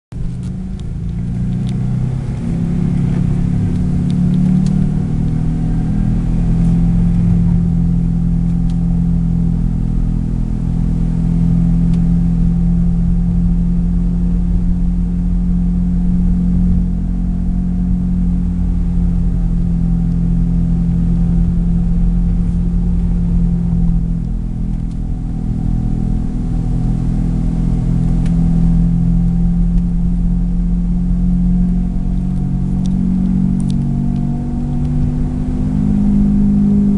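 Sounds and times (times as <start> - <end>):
car low drone: 0.1 - 36.9
road rumble: 0.1 - 36.9.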